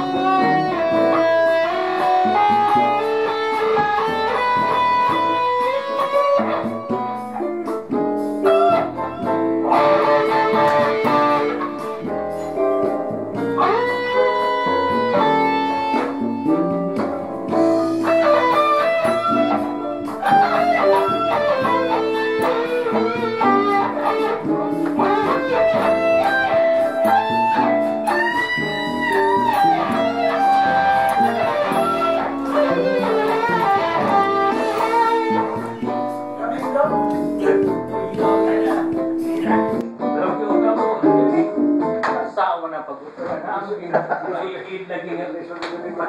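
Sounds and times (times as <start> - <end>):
electric guitar lead: 0.0 - 42.1
backing track: 0.0 - 42.4.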